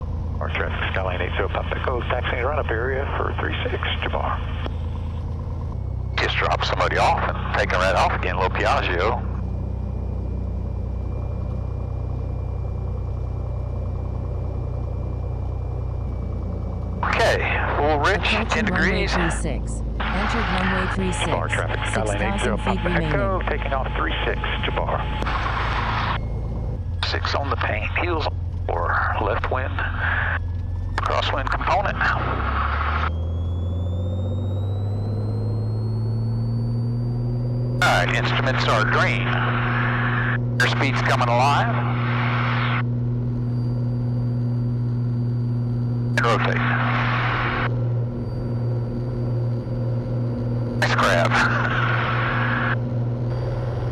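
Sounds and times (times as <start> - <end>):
light aircraft engine droning: 0.0 - 53.9
thin rising whine: 0.0 - 53.9
faint high tone: 17.0 - 25.1.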